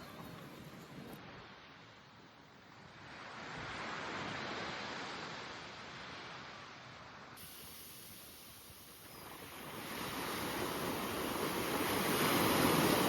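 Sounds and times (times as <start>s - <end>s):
waves washing onto a beach: 2.7s - 13.0s.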